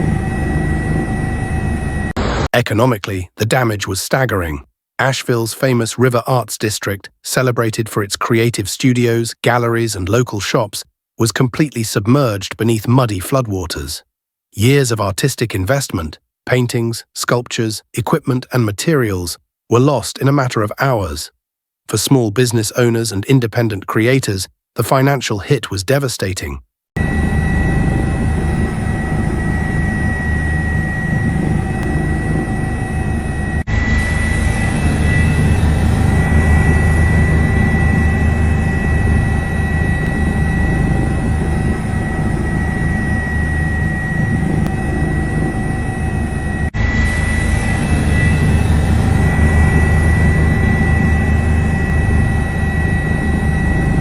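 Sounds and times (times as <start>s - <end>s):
mechanical drone with high whine: 0.0s - 2.5s, 27.0s - 54.0s.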